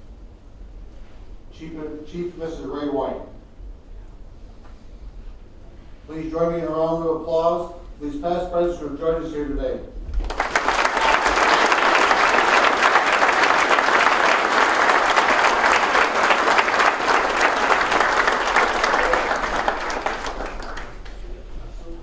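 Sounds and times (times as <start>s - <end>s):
audience applauding: 10.2s - 21.4s.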